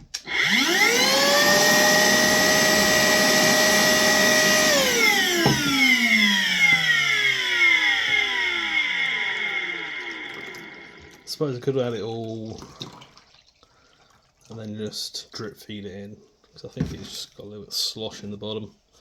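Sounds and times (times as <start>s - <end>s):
vacuum motor whining: 0.0s - 11.4s.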